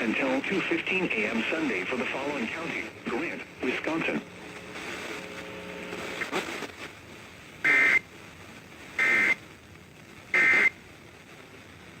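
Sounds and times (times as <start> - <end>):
radio reception hiss: 0.0 - 12.0
short data tone bursts: 9.0 - 9.4.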